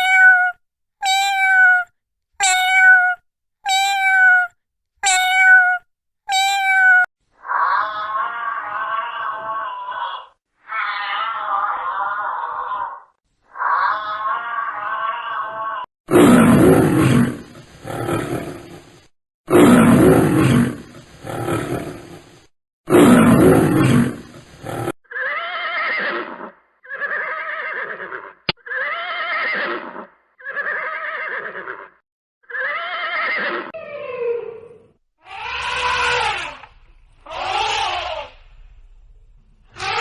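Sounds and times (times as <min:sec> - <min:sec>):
harsh animal calls: 0:02.4 - 0:12.7, 0:35.2 - 0:38.4, 0:39.7 - 0:40.0.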